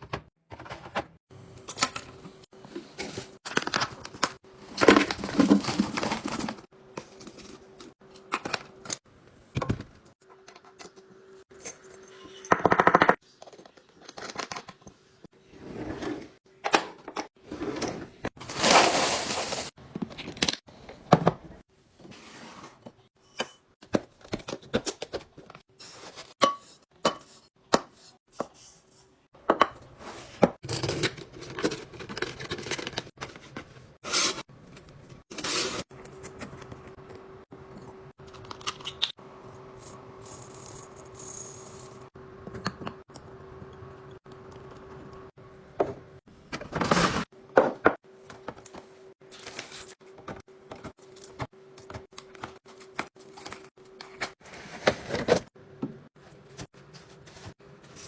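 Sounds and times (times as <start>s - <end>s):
kitchen items clicking and knocking: 0.0s - 15.1s, 22.8s - 28.6s, 29.4s - 39.2s.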